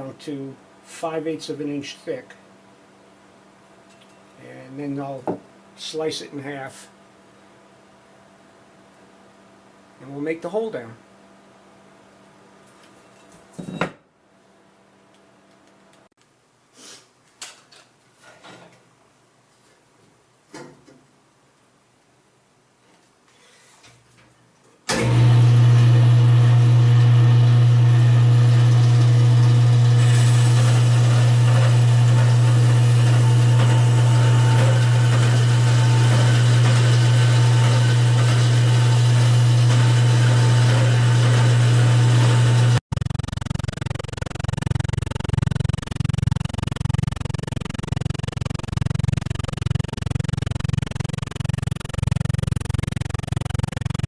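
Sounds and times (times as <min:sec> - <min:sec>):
bandsaw motor hum: 0:24.9 - 0:54.0
fluttering low machine rumble: 0:42.9 - 0:54.0.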